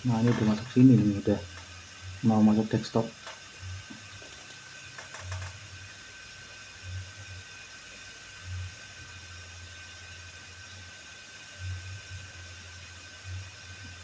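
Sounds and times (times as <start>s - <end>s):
low pulsing hum: 0.0s - 10.9s.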